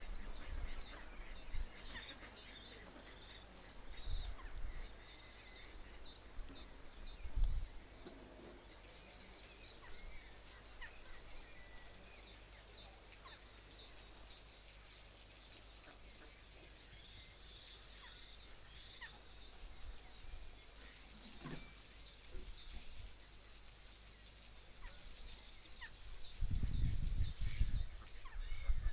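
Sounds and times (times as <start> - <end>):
small birds chirping: 0.0 - 28.9.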